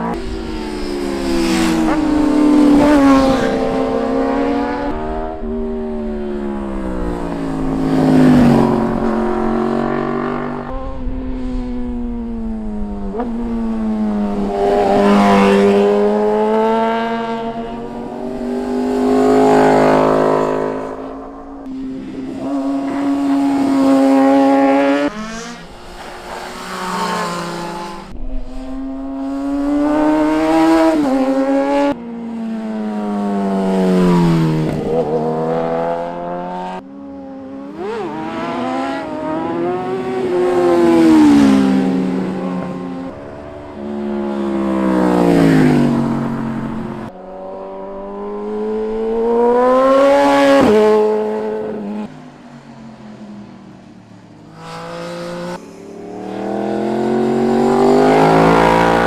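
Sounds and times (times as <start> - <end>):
motorcycles passing by: 0.0 - 59.0.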